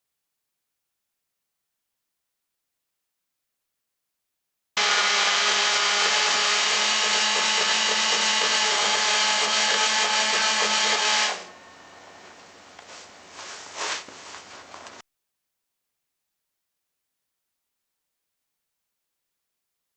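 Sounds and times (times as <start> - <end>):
chainsaw running: 4.8 - 11.5.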